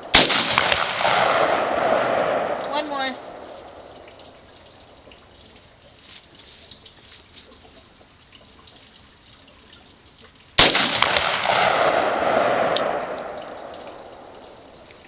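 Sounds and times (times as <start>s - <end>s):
rifle shot: 0.0s - 3.8s, 10.6s - 14.4s.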